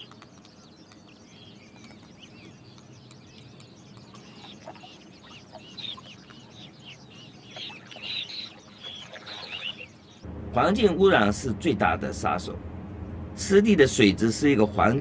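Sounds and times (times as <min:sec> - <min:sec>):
flock of birds chirping: 0:00.0 - 0:11.0.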